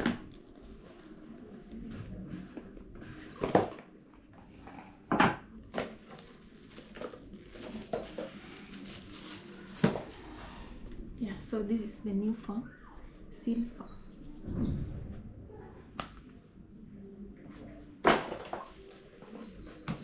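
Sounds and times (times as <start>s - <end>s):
packaging rustling: 5.8s - 10.3s.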